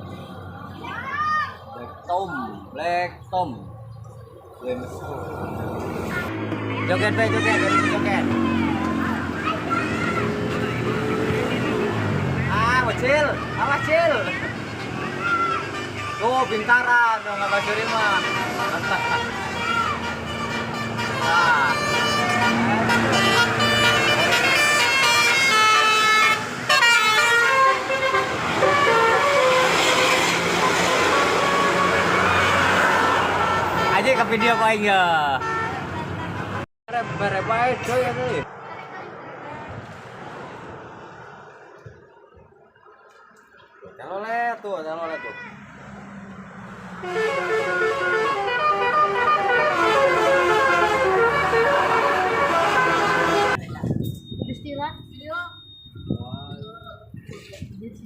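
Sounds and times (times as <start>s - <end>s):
multi-tone bus air horn tune: 17.3s - 34.8s, 35.4s - 36.0s, 47.0s - 53.6s.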